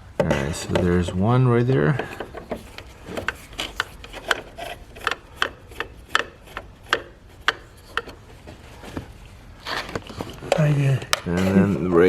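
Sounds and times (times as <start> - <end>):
screwdriver clicks and taps: 2.2 - 8.2.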